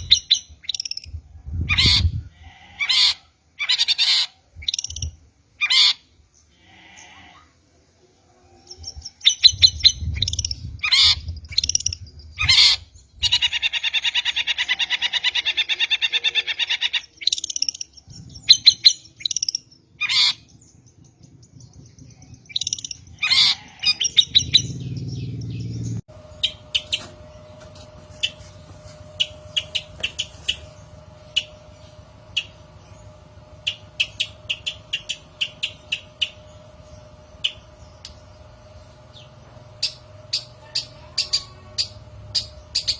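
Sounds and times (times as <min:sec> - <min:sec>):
bird harsh calls and chattering: 0:00.0 - 0:02.2, 0:02.8 - 0:07.3, 0:08.5 - 0:42.9
steady hum: 0:14.5 - 0:42.9
rapid ticking chirps: 0:22.5 - 0:23.2, 0:29.1 - 0:42.9.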